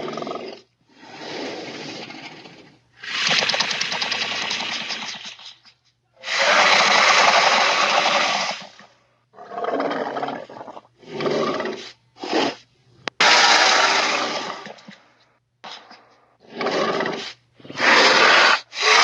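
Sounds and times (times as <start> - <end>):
dinosaur creature calls: 6.2 - 8.5, 16.6 - 19.0.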